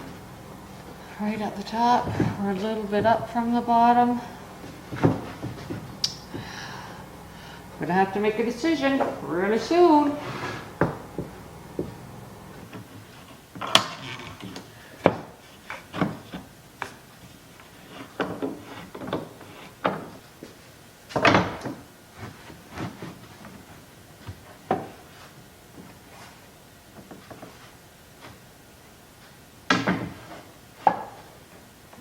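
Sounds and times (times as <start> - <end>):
wood knocking on wood: 4.7 - 6.5, 10.8 - 12.0
wooden board scraping: 10.2 - 12.0.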